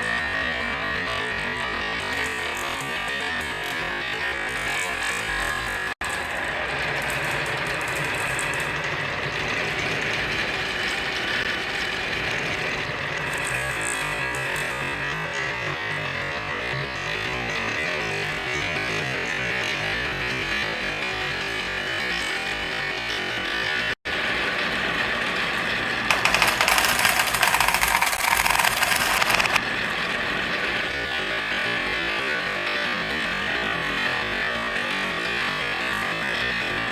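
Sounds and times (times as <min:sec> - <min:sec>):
marbles rattling down a track: 0:26.1 - 0:29.6.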